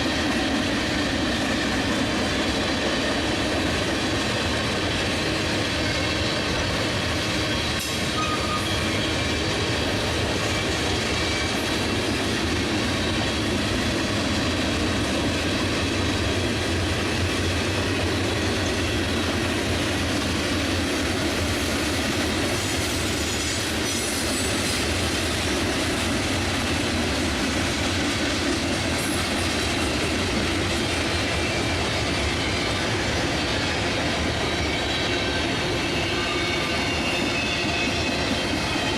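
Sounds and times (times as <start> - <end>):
freight train rumble: 0.0 - 38.9
faint wheel squeal: 8.0 - 9.3, 34.6 - 38.9.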